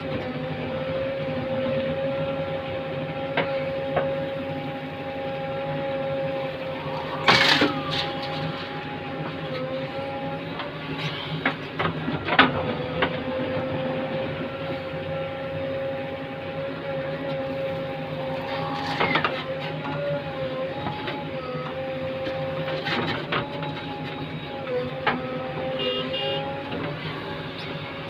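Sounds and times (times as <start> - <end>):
backhoe loader engine drone: 0.0 - 28.0.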